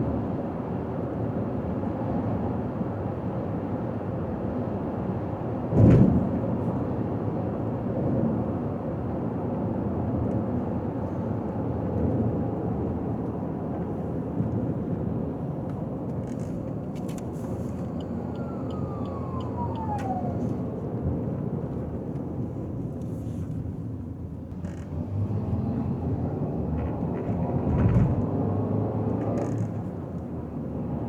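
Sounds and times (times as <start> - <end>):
car road and tyre noise: 0.1 - 31.0
brief falling tone: 17.3 - 20.7.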